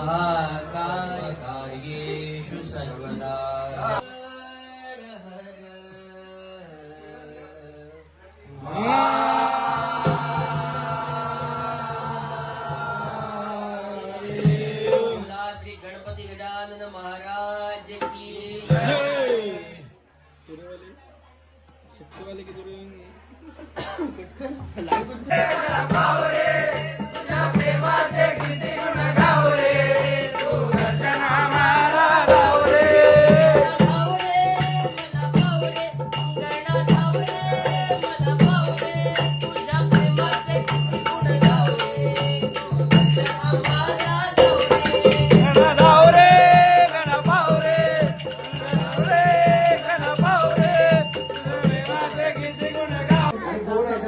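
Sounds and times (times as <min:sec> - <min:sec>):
devotional song singing: 0:00.0 - 0:07.8, 0:08.5 - 0:20.0, 0:25.1 - 0:54.0
rapid rattling percussion: 0:24.7 - 0:53.4.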